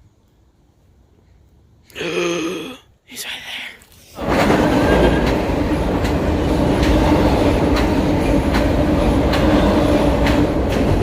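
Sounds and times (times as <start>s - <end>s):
train rumbling hum: 3.2s - 11.0s
wheels clicking over rail joints: 4.1s - 11.0s.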